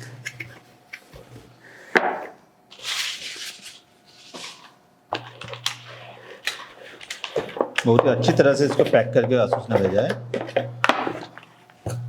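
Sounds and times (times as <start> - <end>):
packaging rustling and sliding: 2.7 - 7.9.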